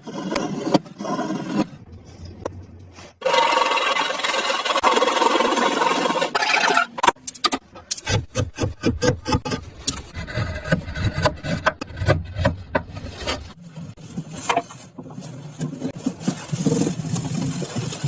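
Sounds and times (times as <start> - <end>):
hand tool scraping wood: 7.9 - 13.6.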